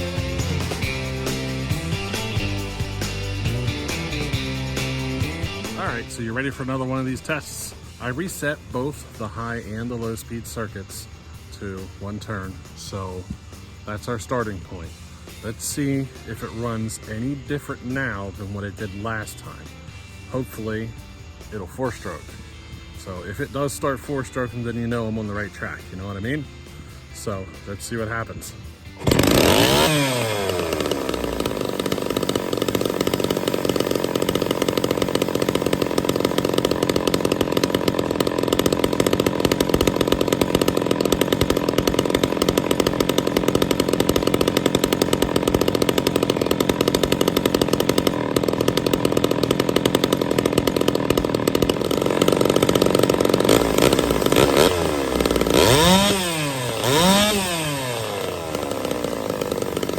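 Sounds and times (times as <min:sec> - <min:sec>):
chainsaw throttle blips: 0:00.0 - 0:10.7, 0:23.0 - 0:59.9
chainsaw engine running: 0:00.0 - 0:59.9.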